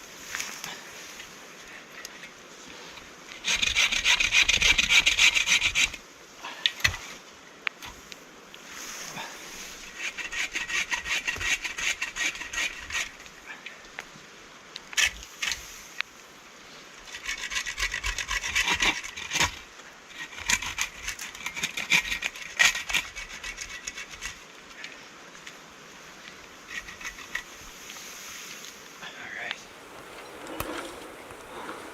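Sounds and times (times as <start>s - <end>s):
hand saw cutting wood: 3.4s - 6.0s, 9.8s - 13.2s, 17.1s - 19.6s, 20.2s - 24.4s, 26.7s - 27.6s.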